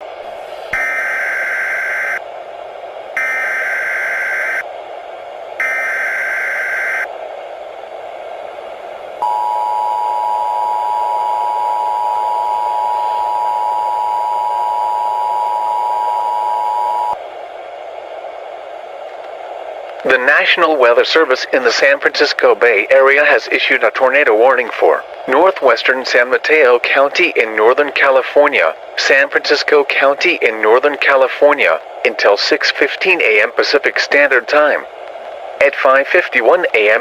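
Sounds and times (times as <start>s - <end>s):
constant hiss: 0.0s - 37.0s
data burst tones: 0.8s - 2.2s, 3.2s - 4.6s, 5.6s - 7.1s
two-tone attention signal: 9.2s - 17.2s.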